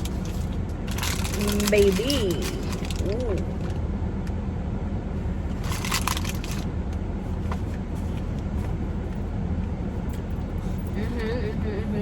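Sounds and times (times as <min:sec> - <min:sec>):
crinkling rustle: 0:00.0 - 0:03.8, 0:05.6 - 0:06.7
car air conditioning hum: 0:00.0 - 0:12.0.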